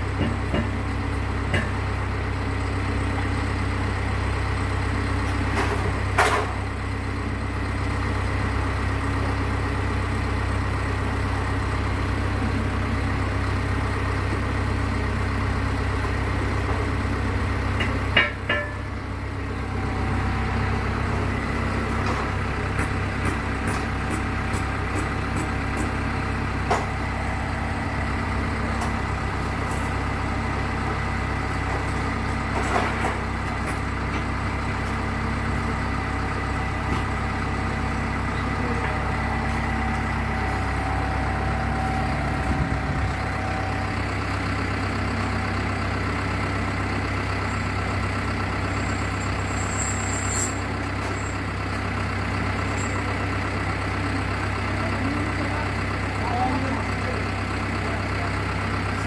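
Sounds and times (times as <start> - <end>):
engine running steadily: 0.0 - 59.0
sharp knocks or clanks: 17.8 - 18.8, 22.8 - 26.0.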